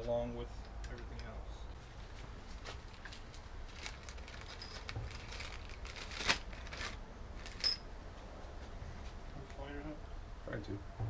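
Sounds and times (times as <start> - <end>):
metal parts and tools clinking: 4.0 - 7.9.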